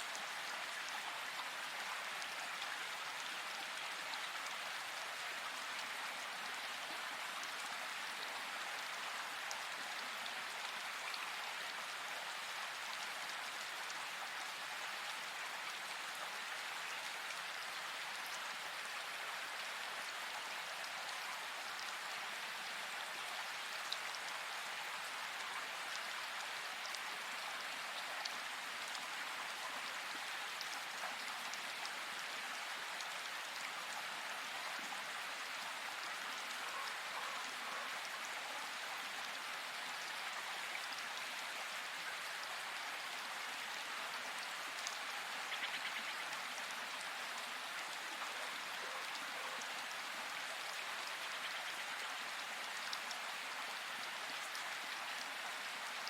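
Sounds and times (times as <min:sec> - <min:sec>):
hiss of rain or running water: 0:00.0 - 0:56.0.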